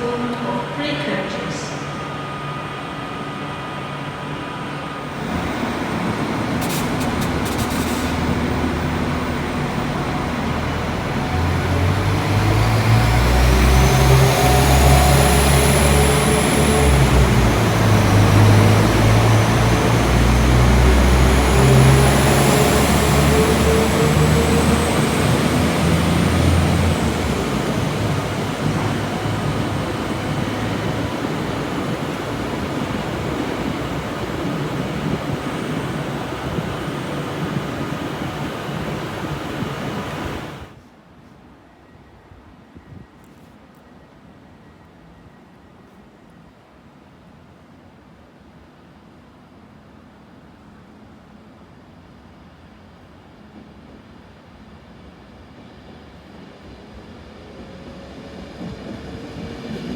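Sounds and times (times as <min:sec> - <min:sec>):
train passing: 0:00.0 - 0:40.8
gliding whine: 0:01.8 - 0:40.8.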